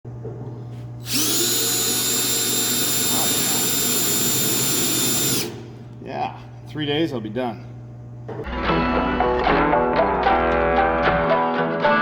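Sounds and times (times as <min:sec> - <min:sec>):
electric power tool whining: 0:01.0 - 0:05.7.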